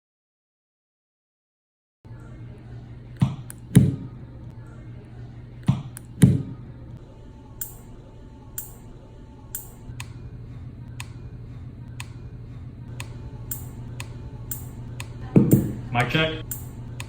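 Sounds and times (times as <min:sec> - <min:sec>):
steady low hum: 0:02.1 - 0:17.0
sharp thin clicks: 0:09.6 - 0:10.2, 0:12.9 - 0:15.2, 0:16.4 - 0:17.0.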